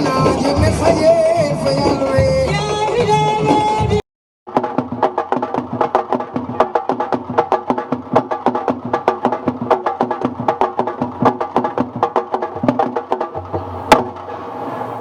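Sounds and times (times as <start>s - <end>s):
fast hand and stick drumming: 4.5s - 14.5s.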